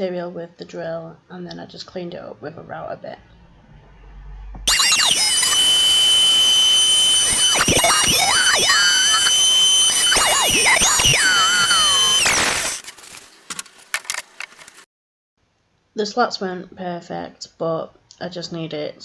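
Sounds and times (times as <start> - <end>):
electric router whining: 4.7 - 12.9.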